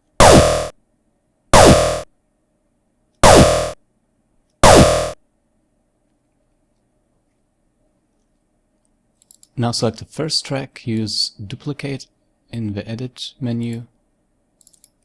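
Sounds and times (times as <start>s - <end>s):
synthesized laser blaster shots: 0.2s - 0.7s, 1.6s - 2.0s, 3.2s - 3.8s, 4.6s - 5.2s.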